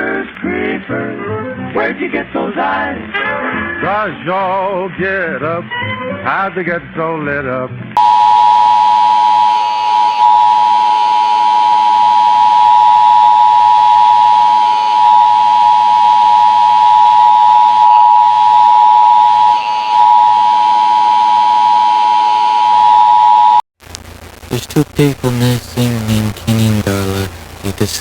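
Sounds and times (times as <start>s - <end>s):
two-tone electronic alarm: 8.0s - 23.6s.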